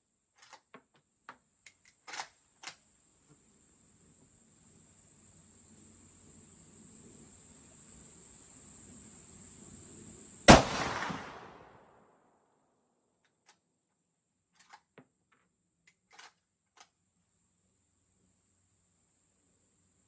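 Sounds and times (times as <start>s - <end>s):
rifle shot: 10.5s - 11.9s.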